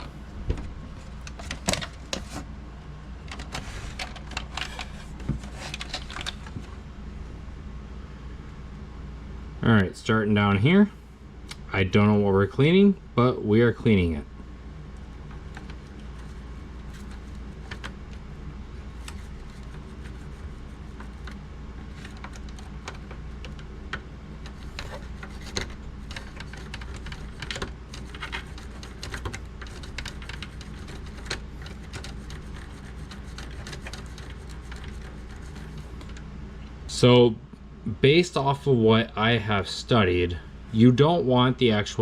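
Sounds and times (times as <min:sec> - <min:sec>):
low hum: 0:00.0 - 0:42.0
toothbrush scrubbing plastic and metal: 0:18.8 - 0:23.5, 0:24.4 - 0:36.1.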